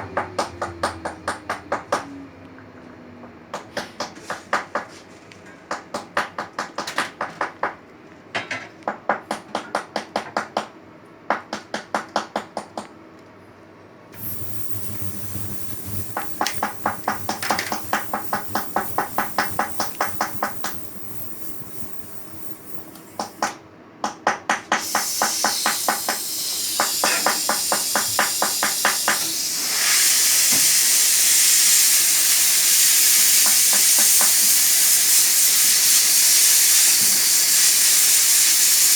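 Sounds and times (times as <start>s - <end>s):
gas torch flame hissing: 14.2s - 23.6s, 24.7s - 38.9s
quick sharp metallic taps: 14.2s - 29.3s.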